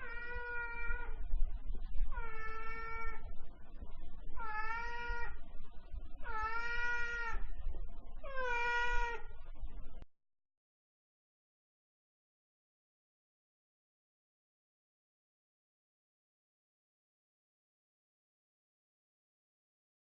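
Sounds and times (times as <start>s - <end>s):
cat meowing: 0.0s - 1.2s, 2.1s - 3.3s, 4.4s - 5.4s, 6.2s - 7.4s, 8.2s - 9.3s.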